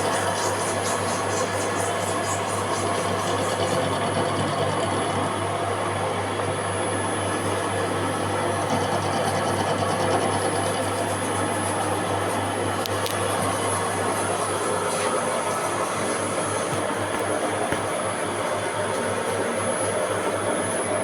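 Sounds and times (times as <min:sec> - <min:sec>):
machine tool cutting metal: 0:08.3 - 0:11.2.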